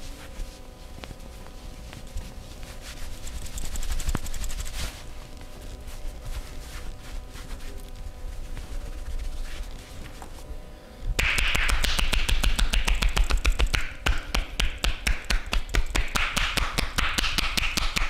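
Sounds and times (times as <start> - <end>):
massage hands tapping and slapping: 11.2 - 18.0.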